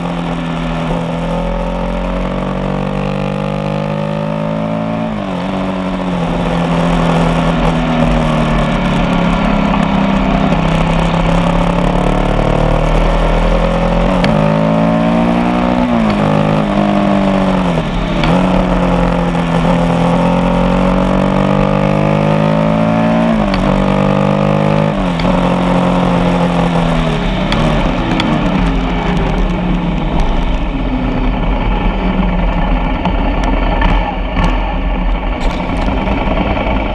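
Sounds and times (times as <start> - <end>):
motorcycle engine revving through gears: 0.0 - 36.9
steady rushing noise: 0.0 - 36.9.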